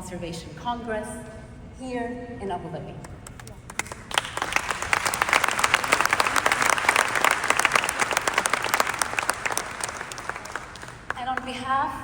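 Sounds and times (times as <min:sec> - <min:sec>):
audience applauding: 0:03.3 - 0:11.5.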